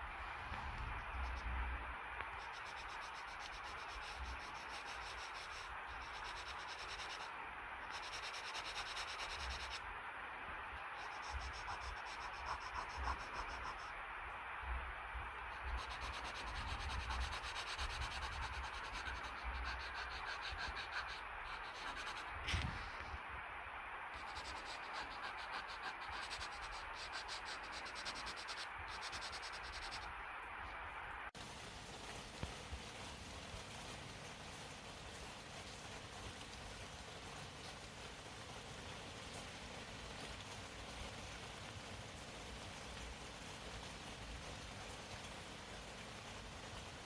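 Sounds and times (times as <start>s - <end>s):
drawing tool scratching on paper: 7.9s - 9.8s, 24.2s - 30.1s.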